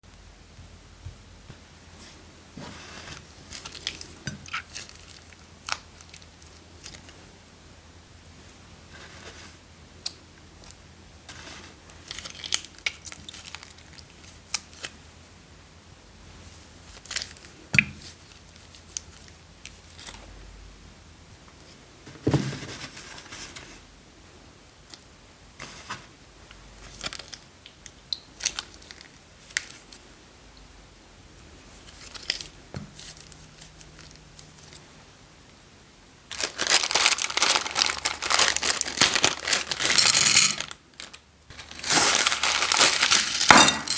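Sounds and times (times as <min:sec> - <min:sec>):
plastic bags crinkling: 0:03.5 - 0:07.0, 0:12.0 - 0:14.2, 0:36.3 - 0:43.9
containers and utensils clinking: 0:36.4 - 0:43.9.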